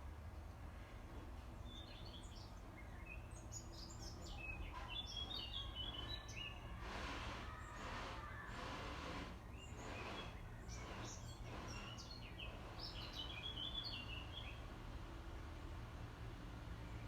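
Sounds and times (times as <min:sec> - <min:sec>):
small birds chirping: 0:09.5 - 0:14.6.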